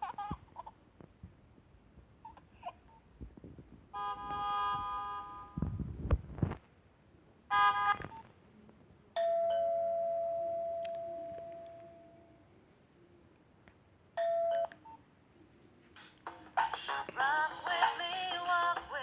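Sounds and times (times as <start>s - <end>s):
phone ringtone electronic tones: 9.2s - 12.2s, 14.2s - 14.8s.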